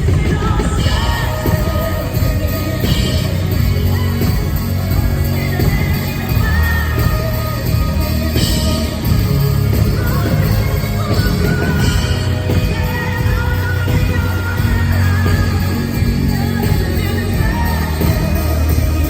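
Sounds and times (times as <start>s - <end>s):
live country-pop band music: 0.0s - 19.0s
person singing: 0.0s - 19.0s.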